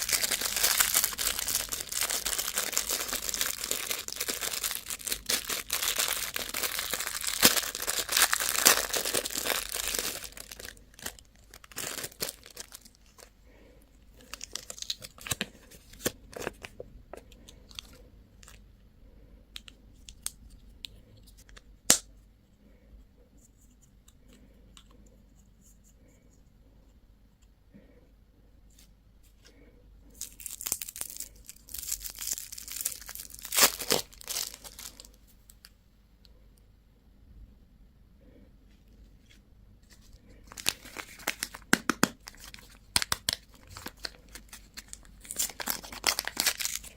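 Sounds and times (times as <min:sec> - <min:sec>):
candy wrapper crinkling: 0:00.0 - 0:13.4, 0:14.2 - 0:18.6, 0:30.1 - 0:35.7, 0:39.8 - 0:46.9.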